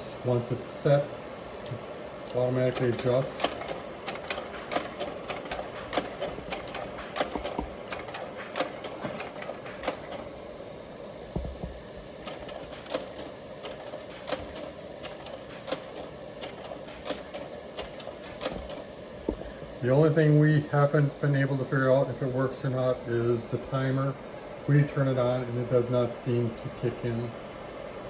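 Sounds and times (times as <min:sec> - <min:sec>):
projector cooling fan hum: 0:00.0 - 0:28.0
projector clicking: 0:02.3 - 0:10.4, 0:12.2 - 0:19.0.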